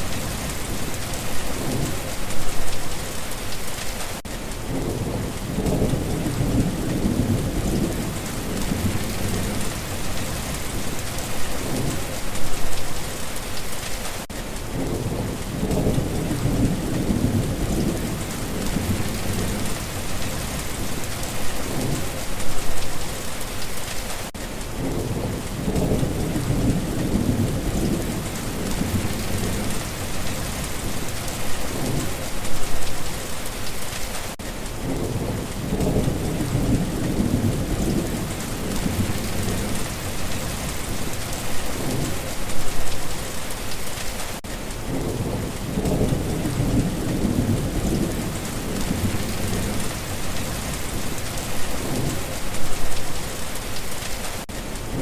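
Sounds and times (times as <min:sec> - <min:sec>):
steady rain falling: 0:00.0 - 0:55.0
low rolling thunder: 0:04.6 - 0:12.6, 0:14.7 - 0:22.8, 0:24.7 - 0:32.8, 0:34.8 - 0:42.9, 0:44.8 - 0:53.0.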